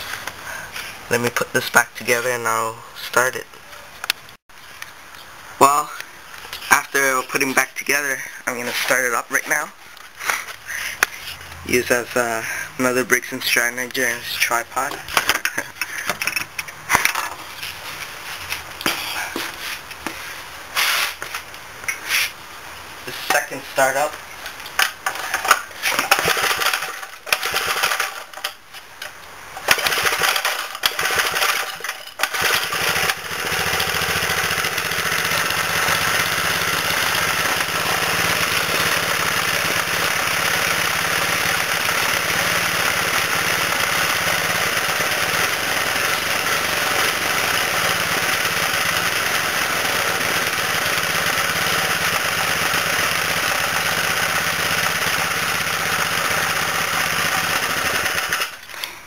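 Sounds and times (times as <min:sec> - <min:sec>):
small engine starting and running: 0:24.8 - 0:28.6, 0:29.6 - 0:58.8.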